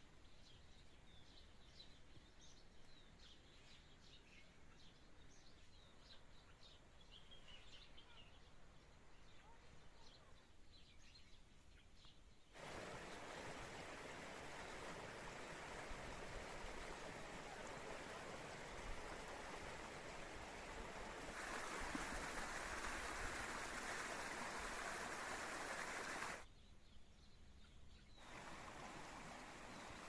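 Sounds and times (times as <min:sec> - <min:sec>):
faint birds chirping: 0:00.0 - 0:30.0
flowing spring water: 0:12.6 - 0:26.4, 0:28.2 - 0:30.0.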